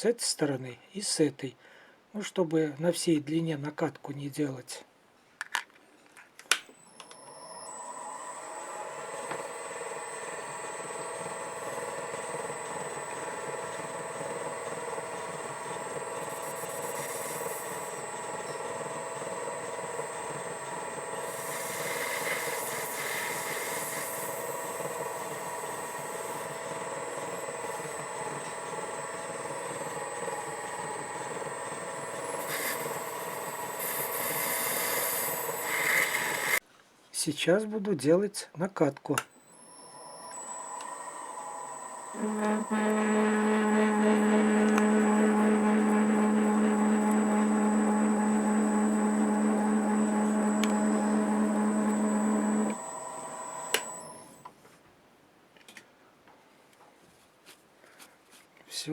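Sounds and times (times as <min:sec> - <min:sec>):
metal lathe humming: 0:06.9 - 0:36.6, 0:39.5 - 0:54.4
cutting tool hissing on metal: 0:10.0 - 0:36.6, 0:42.0 - 0:54.2.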